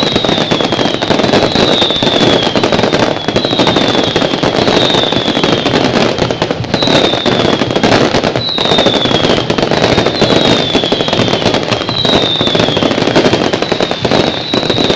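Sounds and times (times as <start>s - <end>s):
fireworks crackling: 0.0s - 14.9s
short high falling whistle: 6.8s - 9.5s.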